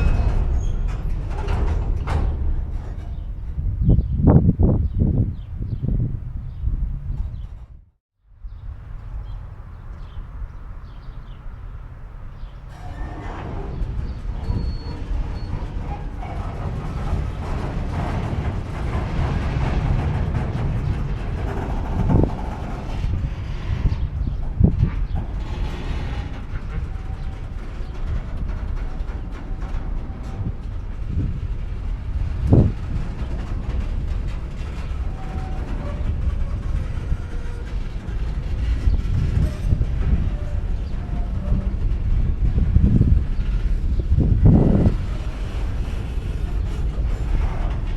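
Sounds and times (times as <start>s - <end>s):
metallic creaking and clicking: 0.0s - 4.1s, 12.5s - 47.9s
faint metal squeals: 0.0s - 4.2s, 12.4s - 47.9s
train wheels rumbling: 0.0s - 7.9s, 8.6s - 47.9s
high squeal: 12.7s - 18.2s.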